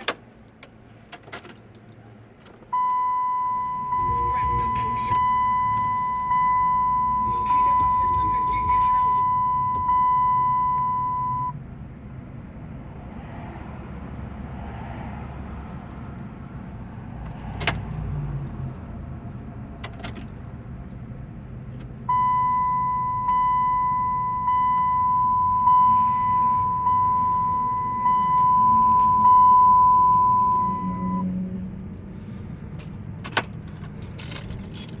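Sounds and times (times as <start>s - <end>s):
car electronic warning tone: 2.7s - 11.6s, 22.1s - 31.3s
keys clicking and jangling: 4.3s - 9.2s, 31.8s - 35.0s.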